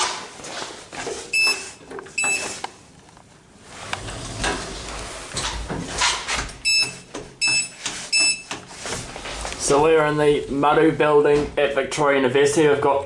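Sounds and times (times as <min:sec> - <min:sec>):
high electronic beeps: 0:06.6 - 0:08.5.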